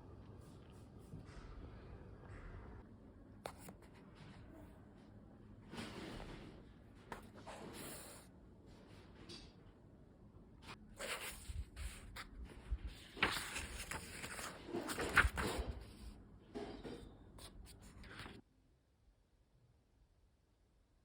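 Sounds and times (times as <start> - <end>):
handling noise rustling and scraping: 10.6 - 18.4.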